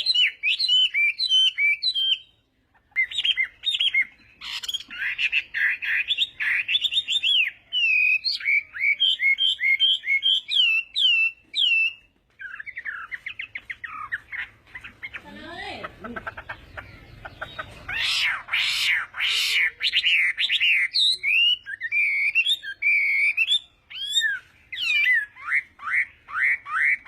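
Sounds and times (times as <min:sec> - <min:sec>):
bird singing whistles and trills: 0:00.0 - 0:15.3, 0:16.7 - 0:27.0.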